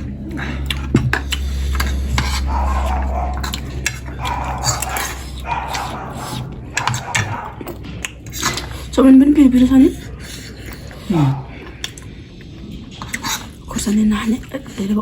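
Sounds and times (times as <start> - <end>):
steady low hum: 0.0 - 15.0
cutlery scraping on a plate: 1.0 - 8.8, 13.0 - 13.6.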